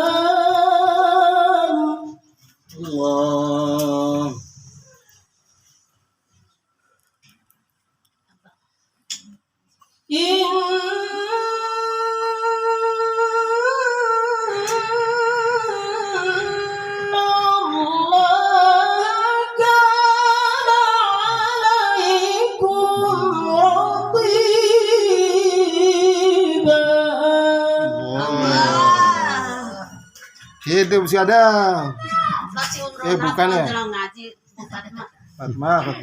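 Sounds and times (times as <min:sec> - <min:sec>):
woman reciting melodically: 0:00.0 - 0:04.5, 0:10.1 - 0:30.2.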